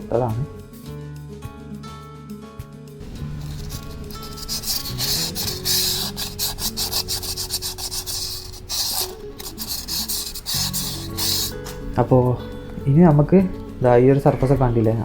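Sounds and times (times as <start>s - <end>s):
soft background music: 0.0s - 15.0s
sandpaper rubbing: 3.0s - 12.0s.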